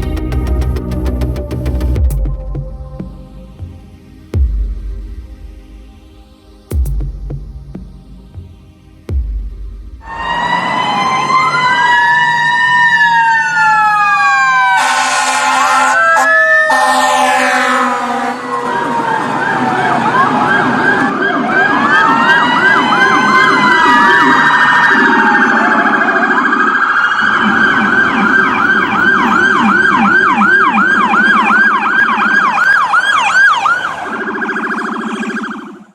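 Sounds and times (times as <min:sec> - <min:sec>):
electronic siren yelping: 0:10.0 - 0:35.9.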